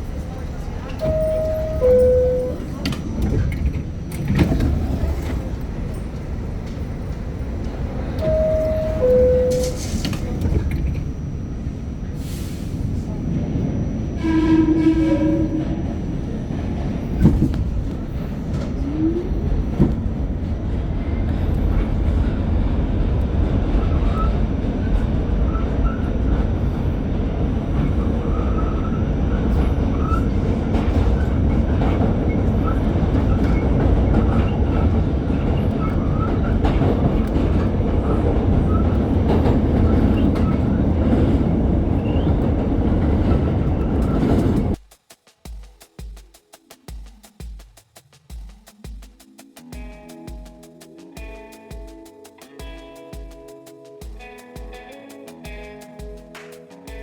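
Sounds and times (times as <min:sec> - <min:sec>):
train rumbling on track: 0:00.0 - 0:44.9
brief pitched tone: 0:01.0 - 0:02.8, 0:08.2 - 0:11.5.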